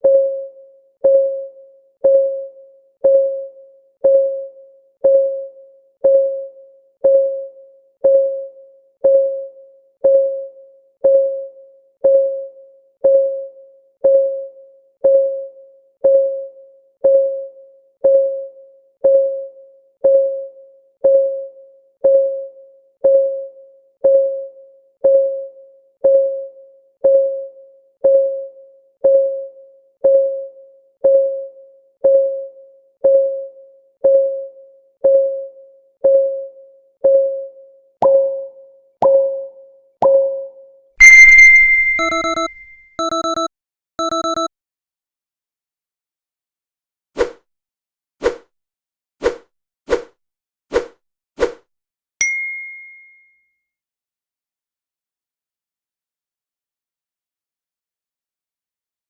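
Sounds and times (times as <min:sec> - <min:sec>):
clock ticking: 0:41.0 - 0:44.5.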